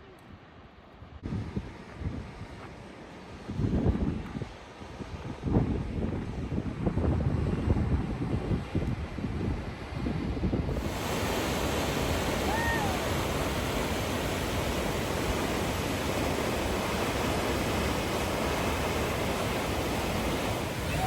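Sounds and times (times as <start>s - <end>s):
waterfall rushing: 10.7s - 21.0s.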